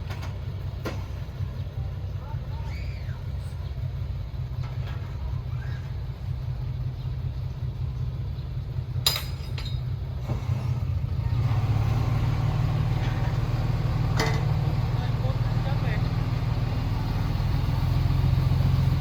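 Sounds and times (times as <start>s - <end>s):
diesel engine rumbling: 0.0s - 19.0s.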